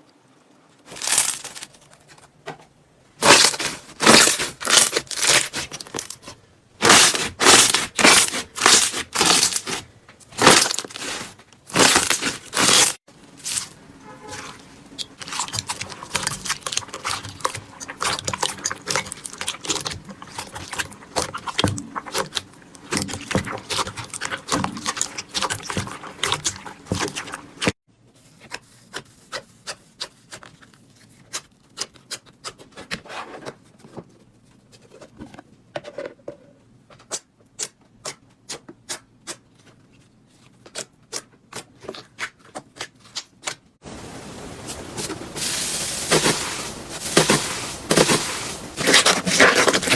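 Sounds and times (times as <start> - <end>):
slime crackling and popping: 0.9 - 1.8, 3.2 - 13.7, 15.0 - 27.7, 45.0 - 49.9.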